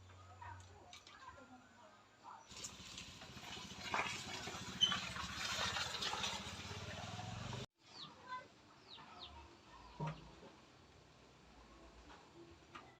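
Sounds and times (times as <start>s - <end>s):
small birds chirping: 7.8s - 10.3s.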